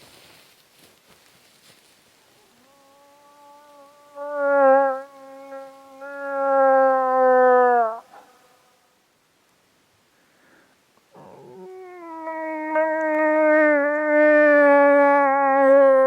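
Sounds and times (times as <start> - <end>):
moose call nasal moan: 2.3 - 8.7, 11.1 - 16.0.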